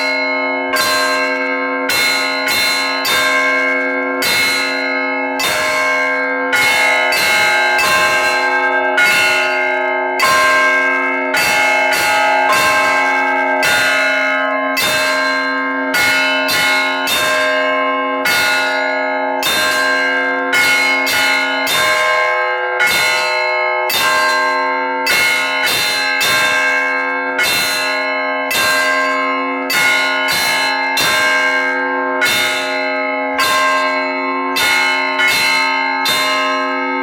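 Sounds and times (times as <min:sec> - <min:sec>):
deep bell humming: 0:00.0 - 0:22.5
small church bells pealing: 0:00.0 - 0:37.0.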